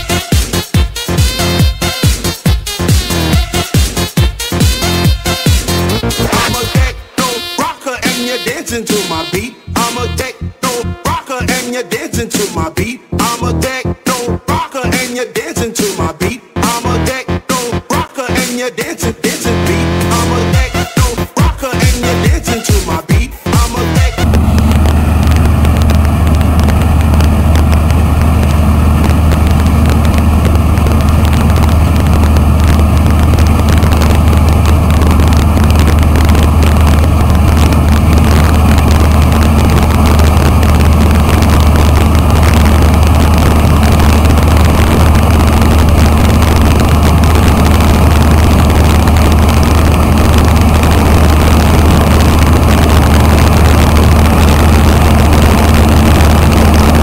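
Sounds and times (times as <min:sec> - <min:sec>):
large diesel engine running: 0:23.7 - 0:57.0.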